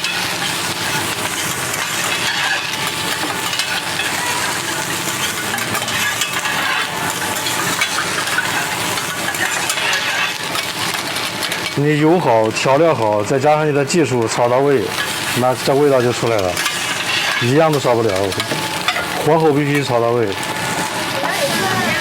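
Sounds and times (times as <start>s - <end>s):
metal spatulas scraping and clinking: 0.0s - 10.8s, 16.0s - 20.4s
food sizzling on griddle: 0.0s - 22.0s.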